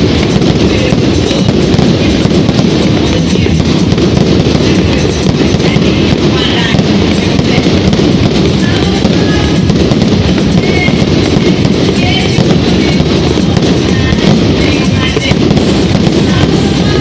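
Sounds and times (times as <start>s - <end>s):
fireworks bangs and crackling: 0.0s - 17.0s
music playing: 0.0s - 17.0s.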